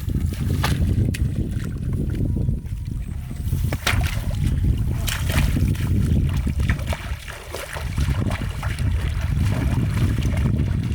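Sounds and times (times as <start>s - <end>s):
water splashing and trickling: 0.0s - 10.9s.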